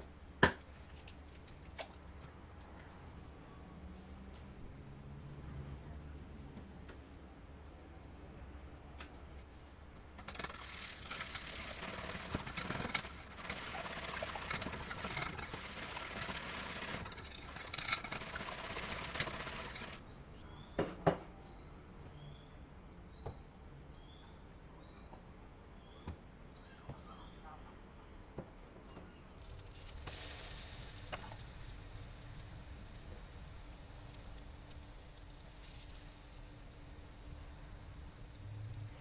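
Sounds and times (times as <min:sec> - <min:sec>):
bread sizzling in a pan: 0:10.3 - 0:20.0, 0:29.4 - 0:39.0.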